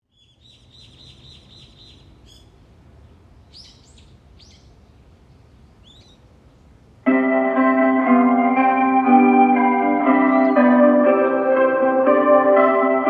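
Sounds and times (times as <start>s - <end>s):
small bird calling: 5.6s - 6.3s, 10.3s - 10.8s.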